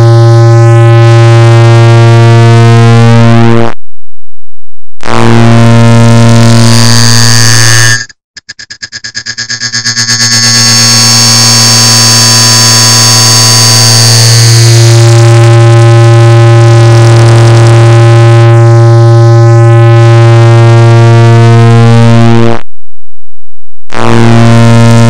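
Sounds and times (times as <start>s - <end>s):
harsh buzzing tone: 0.0s - 3.8s, 5.0s - 22.7s, 23.8s - 25.0s
low hum: 7.8s - 19.7s.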